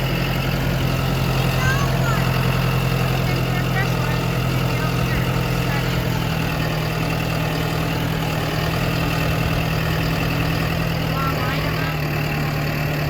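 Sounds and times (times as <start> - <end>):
tractor engine droning: 0.0 - 13.0.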